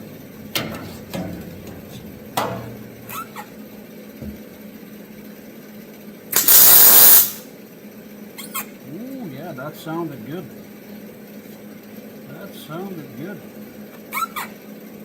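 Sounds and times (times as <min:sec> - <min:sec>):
metal clicks and knocks: 0:00.0 - 0:03.5
welder hissing: 0:06.4 - 0:07.5.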